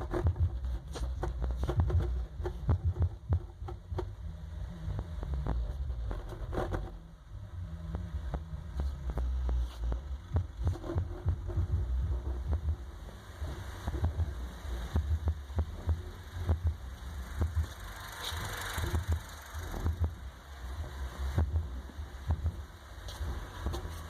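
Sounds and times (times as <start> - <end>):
deep bass from subwoofers: 0.0 - 24.0
sharp crackles or rattles: 16.8 - 20.8.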